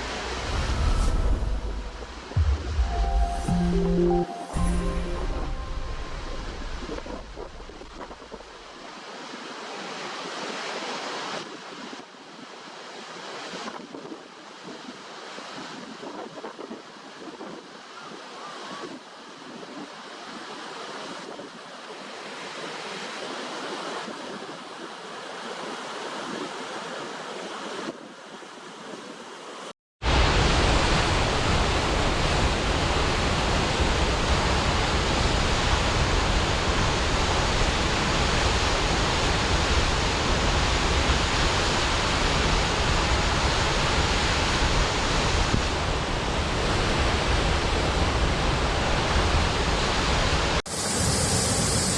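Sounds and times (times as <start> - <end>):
waterfall rushing water: 0.0 - 11.4.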